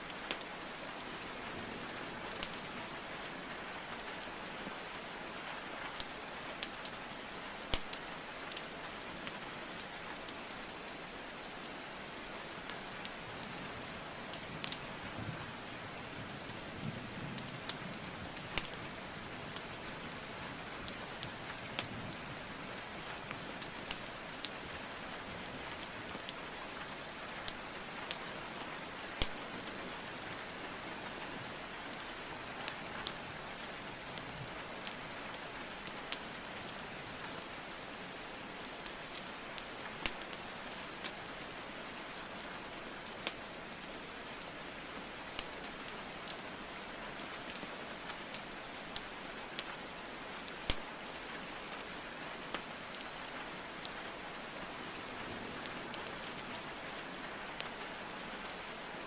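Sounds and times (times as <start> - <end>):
steady rainfall: 0.0 - 59.0
burning wood crackling: 0.1 - 1.3, 7.6 - 10.4, 14.2 - 15.1, 17.6 - 36.8, 38.2 - 41.8, 45.3 - 51.2, 54.8 - 58.6.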